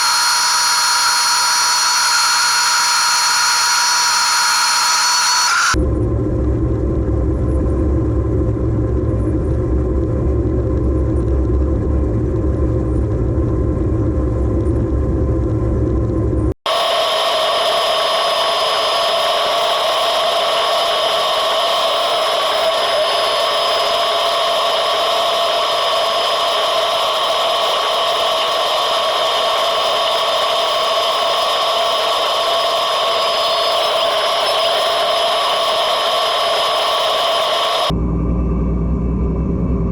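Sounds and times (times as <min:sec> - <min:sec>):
combine harvester drone: 0:00.0 - 0:39.9.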